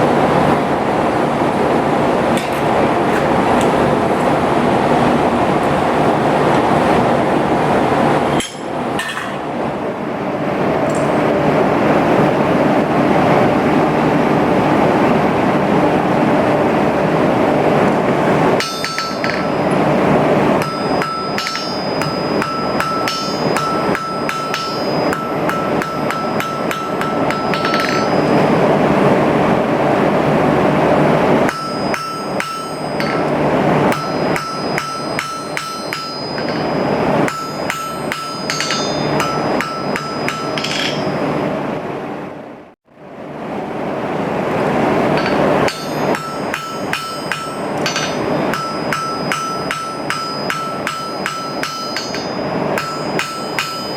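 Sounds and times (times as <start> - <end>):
hammer striking steel on anvil: 8.3 - 9.4, 18.6 - 19.8, 20.6 - 28.5, 31.5 - 41.2, 45.1 - 53.9.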